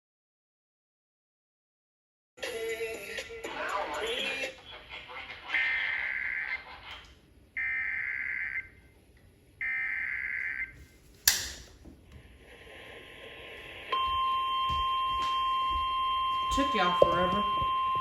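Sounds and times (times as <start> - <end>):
harsh electronic data warble: 5.5 - 6.9
steady alarm tone: 7.6 - 8.9, 9.6 - 10.8, 13.8 - 18.0.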